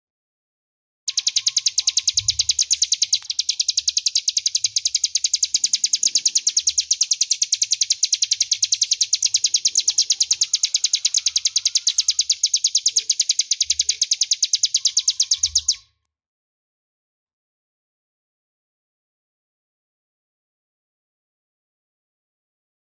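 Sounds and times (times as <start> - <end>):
bird rattling trill: 1.1 - 15.8.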